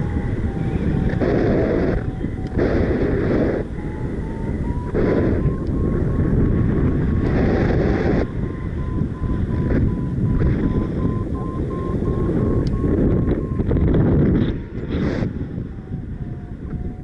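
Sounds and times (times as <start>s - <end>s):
wind buffeting microphone: 0.0s - 17.0s
rapid electronic beeps: 7.2s - 13.9s.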